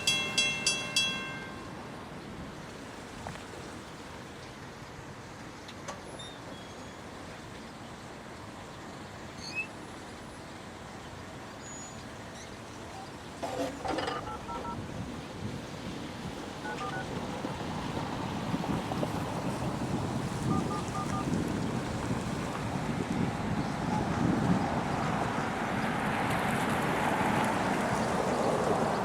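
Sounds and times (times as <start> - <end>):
railroad crossing bell ringing: 0.0 - 2.0, 16.6 - 17.1
phone keypad dialing tones: 13.9 - 14.8, 16.6 - 17.1, 20.5 - 21.3.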